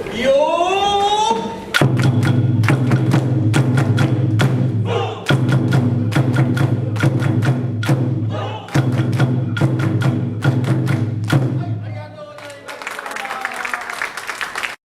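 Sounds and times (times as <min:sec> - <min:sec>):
crowd noise: 0:00.0 - 0:01.8, 0:04.7 - 0:07.0, 0:08.2 - 0:09.0
taiko drum strikes: 0:01.7 - 0:11.8.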